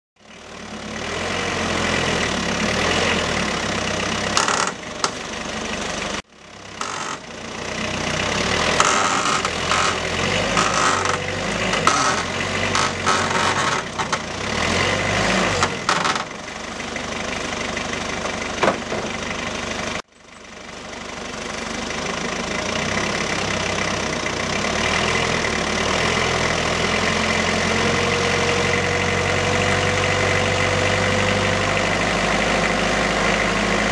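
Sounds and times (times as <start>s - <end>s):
engine running steadily: 2.2s - 26.0s
clanks and knocks: 4.4s - 5.2s, 8.8s - 14.4s, 15.5s - 16.4s, 18.2s - 19.2s.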